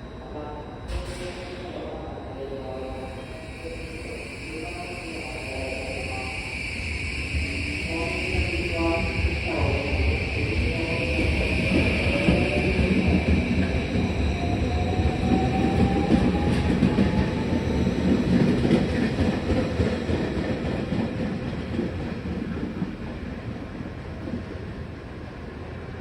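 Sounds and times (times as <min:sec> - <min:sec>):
rumble of train wheels: 0:00.0 - 0:26.0.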